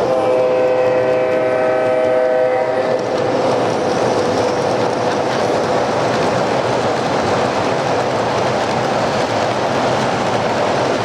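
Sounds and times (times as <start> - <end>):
train whistle: 0.0 - 3.1.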